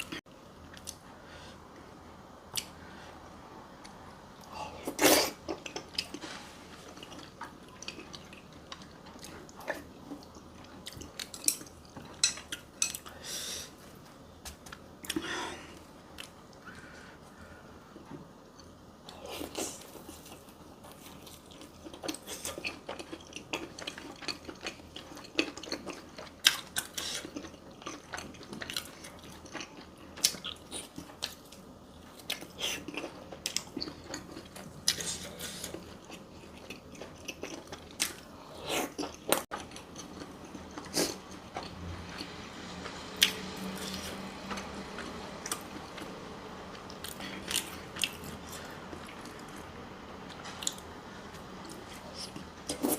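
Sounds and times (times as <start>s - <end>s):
chewing and crunching: 3.8s - 13.2s, 18.6s - 49.7s.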